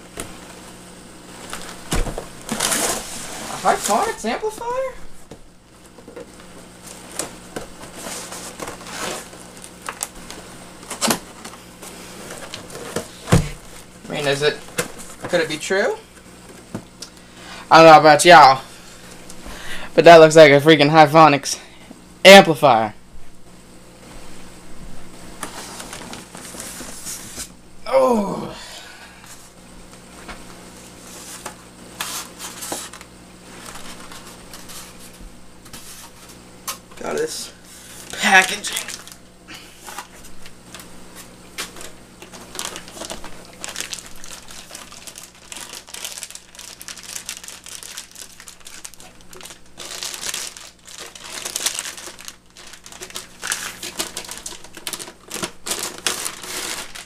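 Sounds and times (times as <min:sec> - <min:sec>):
low steady hum: 0:00.0 - 0:57.0
cardboard box rustling and crinkling: 0:01.4 - 0:04.2, 0:41.7 - 0:57.0
packaging rustling and scraping: 0:01.4 - 0:04.5, 0:05.8 - 0:15.5, 0:25.4 - 0:27.5, 0:30.8 - 0:39.2, 0:39.8 - 0:57.0.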